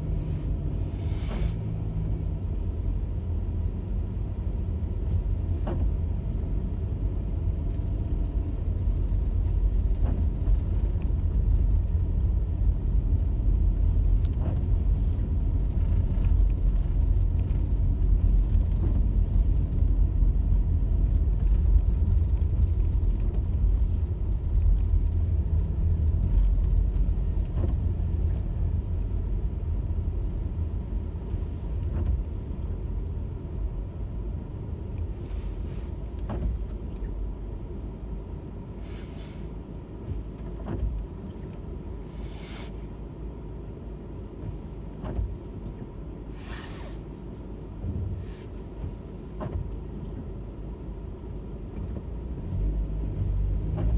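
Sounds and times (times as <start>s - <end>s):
car road rumble: 0.0s - 53.9s
short hissing swishes: 38.8s - 39.6s, 42.1s - 42.9s, 46.3s - 47.2s.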